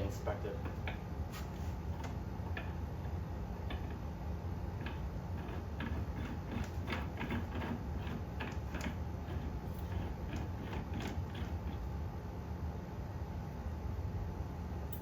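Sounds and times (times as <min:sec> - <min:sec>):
steady low hum: 0:00.0 - 0:15.0
fan parts clicking: 0:00.5 - 0:04.1, 0:04.8 - 0:12.0.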